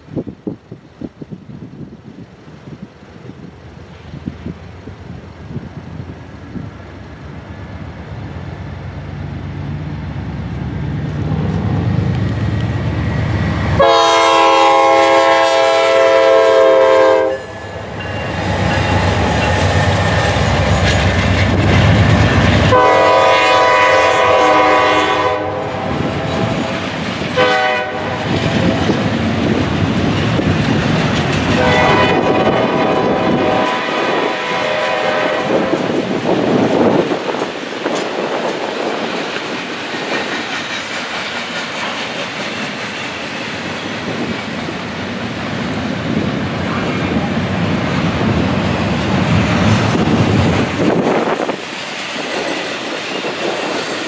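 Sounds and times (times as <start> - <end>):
train rumble: 0.0 - 54.0
locomotive horn blasts: 13.8 - 17.7, 22.7 - 26.8, 27.4 - 28.8, 31.5 - 35.8.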